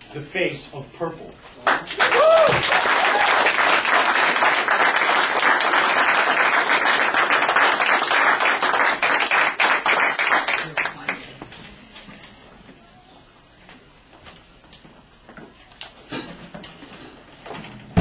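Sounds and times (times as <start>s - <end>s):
audience clapping: 1.6s - 11.3s.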